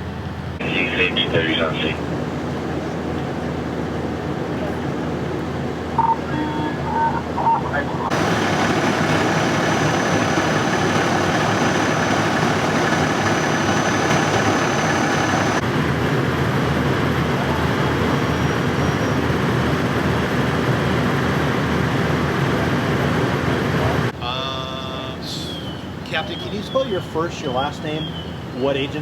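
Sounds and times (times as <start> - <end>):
fire engine motor humming: 0.0 - 24.2.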